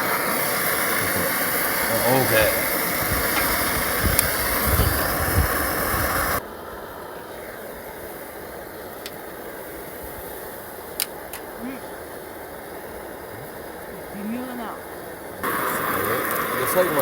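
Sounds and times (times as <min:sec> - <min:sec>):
food frying in hot oil: 0:00.0 - 0:06.4, 0:15.4 - 0:17.0.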